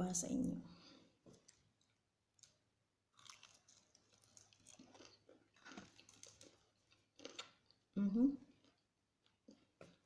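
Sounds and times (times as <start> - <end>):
chewing and crunching fried chicken: 1.2 - 10.0.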